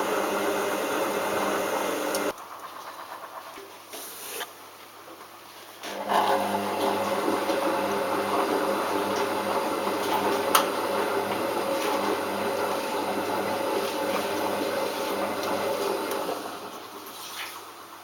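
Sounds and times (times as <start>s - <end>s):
washing machine running: 0.0s - 3.9s, 5.8s - 18.0s.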